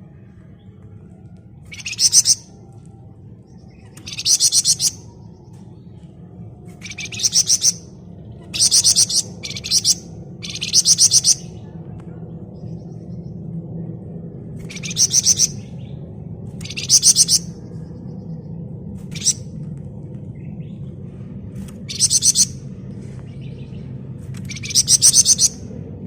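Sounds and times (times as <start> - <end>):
faint low hum: 0.0 - 26.0.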